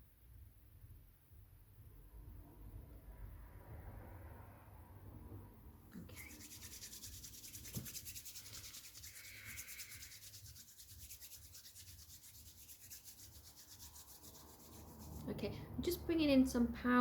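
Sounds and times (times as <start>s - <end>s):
faint rapid rubbing: 6.0s - 15.5s.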